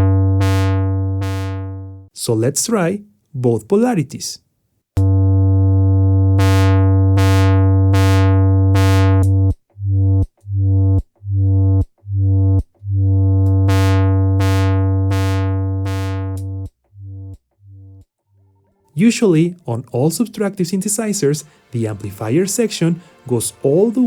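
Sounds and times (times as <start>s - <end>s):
synthesizer filter sweeps: 0.0s - 2.1s, 5.0s - 17.9s.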